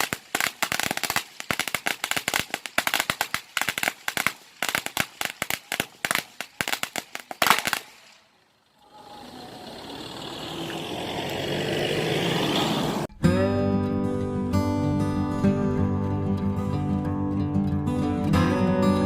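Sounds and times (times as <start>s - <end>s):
firecrackers popping: 0.0s - 8.3s.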